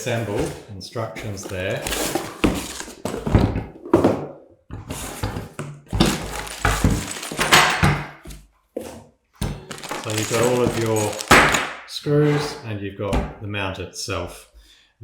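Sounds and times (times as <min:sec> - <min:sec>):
packaging rustling: 0:01.4 - 0:03.3, 0:06.0 - 0:08.0, 0:09.6 - 0:11.8
parts knocking and thunking: 0:05.2 - 0:08.4.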